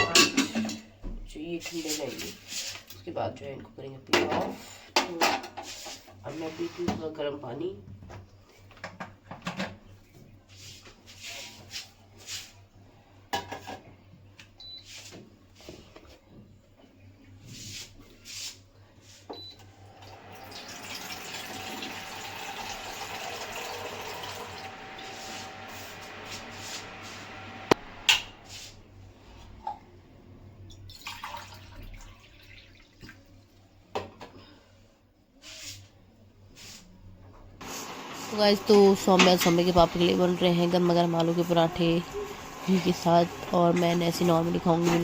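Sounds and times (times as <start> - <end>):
dishes clinking: 0.0 - 0.9
water running: 19.7 - 28.6, 30.8 - 33.8, 37.6 - 45.0.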